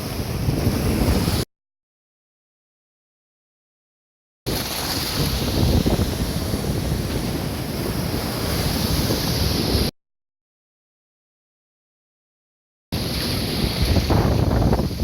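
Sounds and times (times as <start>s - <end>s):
wind buffeting microphone: 0.0s - 1.4s, 5.0s - 9.9s, 13.0s - 15.0s
surf breaking on rocks: 4.5s - 9.9s, 13.0s - 15.0s.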